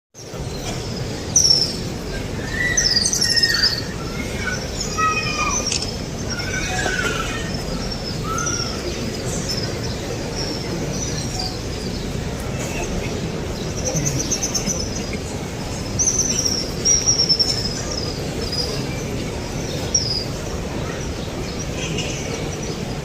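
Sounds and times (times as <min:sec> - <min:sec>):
small birds chirping: 0:00.2 - 0:23.0.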